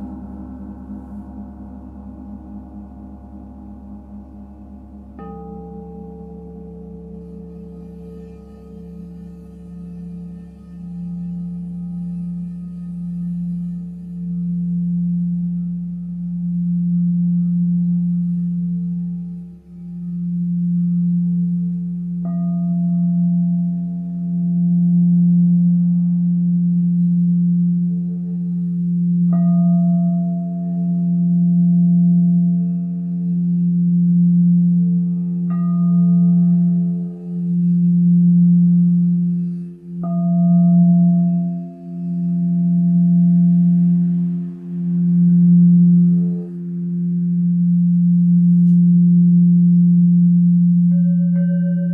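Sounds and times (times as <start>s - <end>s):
large singing bowl low tone: 0.0s - 51.9s.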